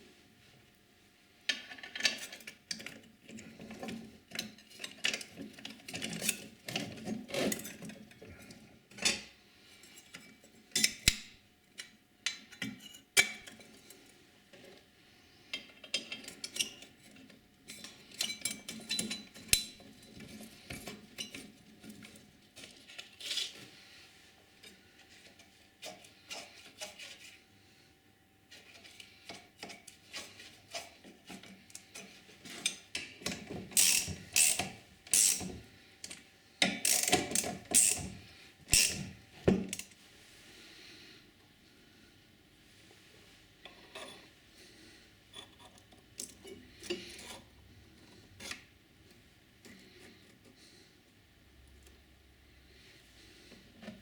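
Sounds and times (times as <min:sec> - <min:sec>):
metal parts clinking and scraping: 0:33.7 - 0:35.5, 0:36.8 - 0:39.9.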